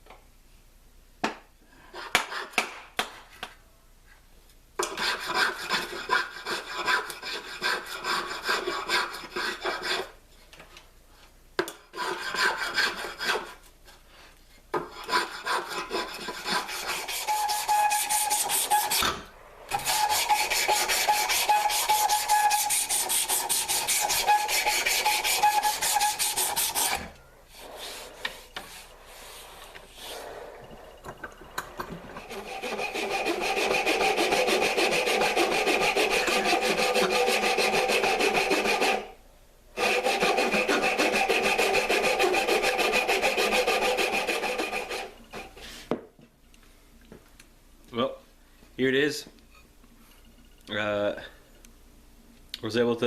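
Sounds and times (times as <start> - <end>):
wood rasp scraping: 4.8 - 10.2, 11.9 - 13.6, 14.8 - 30.4, 32.0 - 39.1, 39.8 - 45.8.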